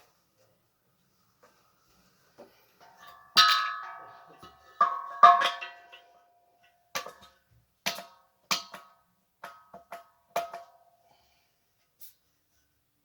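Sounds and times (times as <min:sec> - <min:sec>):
metal stove parts knocking: 0:03.0 - 0:06.0.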